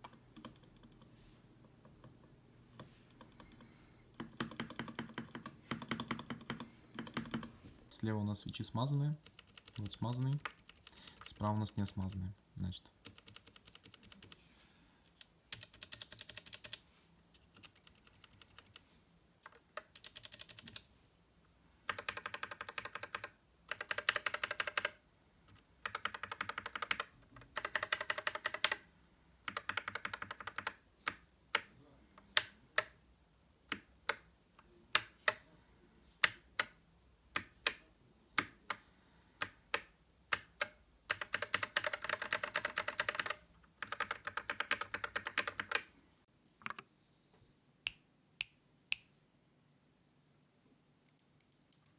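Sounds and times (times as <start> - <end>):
mechanical keyboard switches clacking: 39.4 - 45.8.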